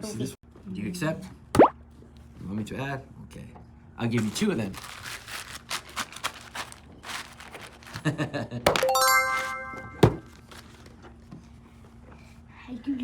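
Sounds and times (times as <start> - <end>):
plastic packaging crinkling: 4.1 - 8.2, 10.2 - 11.0
bright bell-like chime: 8.8 - 10.2.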